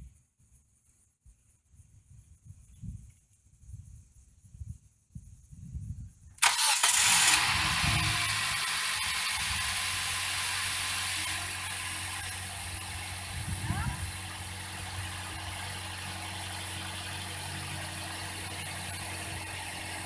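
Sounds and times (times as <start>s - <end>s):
car engine starting and idling: 6.4s - 20.0s.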